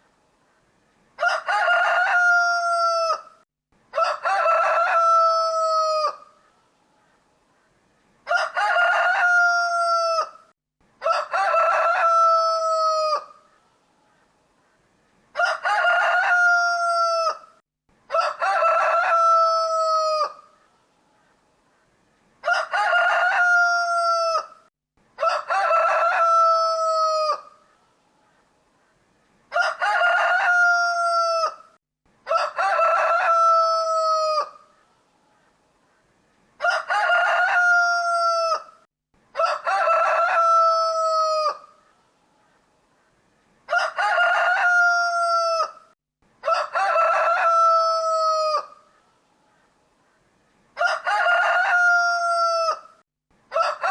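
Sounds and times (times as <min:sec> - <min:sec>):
rooster crowing: 0:01.2 - 0:06.3, 0:08.3 - 0:13.4, 0:15.4 - 0:17.5, 0:18.1 - 0:20.5, 0:22.4 - 0:24.6, 0:25.2 - 0:27.6, 0:29.5 - 0:34.7, 0:36.6 - 0:41.8, 0:43.7 - 0:48.9, 0:50.8 - 0:53.9.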